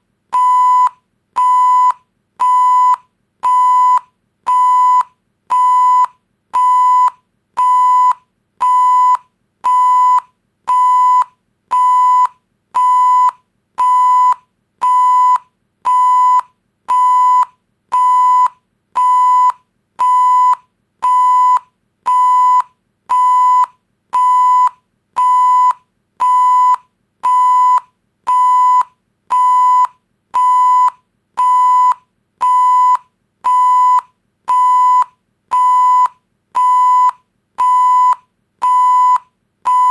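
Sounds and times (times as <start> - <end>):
high electronic beeps: 37.9 - 39.9.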